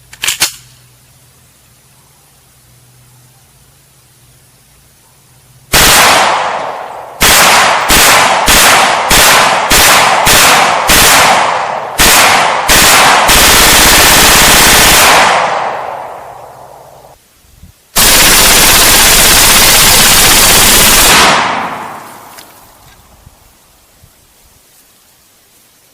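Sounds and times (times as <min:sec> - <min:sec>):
gunfire echo: 0:05.7 - 0:16.7, 0:18.0 - 0:22.4
submachine gun bursts: 0:18.0 - 0:21.6.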